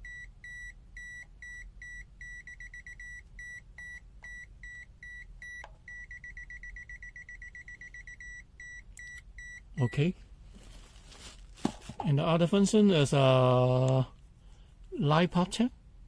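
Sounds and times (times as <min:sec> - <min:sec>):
multimeter buzzer beeping: 0:00.0 - 0:10.0.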